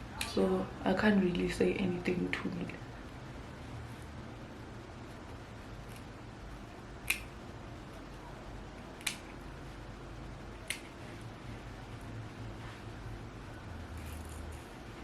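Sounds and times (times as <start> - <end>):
scissors snipping: 7.0 - 7.3.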